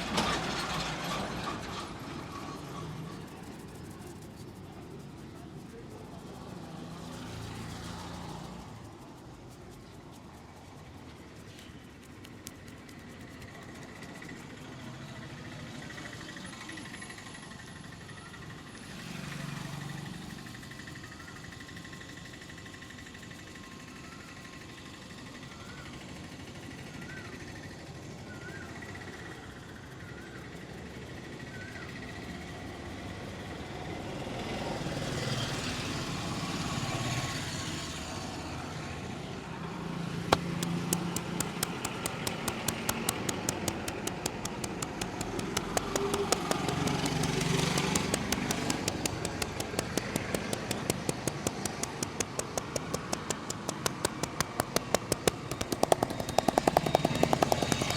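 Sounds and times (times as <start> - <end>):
street traffic: 0.0 - 57.9
fast sharp taps: 11.4 - 14.4, 40.3 - 57.9.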